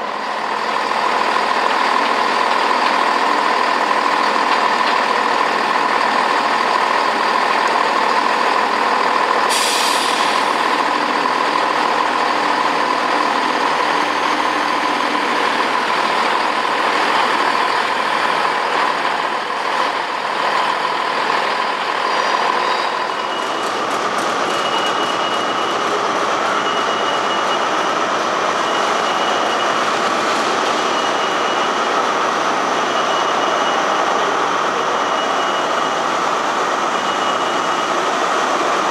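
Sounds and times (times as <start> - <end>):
train running: 0.0 - 38.9
burst of hiss: 9.5 - 10.6
high beep: 22.0 - 25.9, 26.5 - 28.0, 28.6 - 29.9, 30.8 - 31.9, 32.8 - 34.2, 34.9 - 36.1, 37.0 - 38.0.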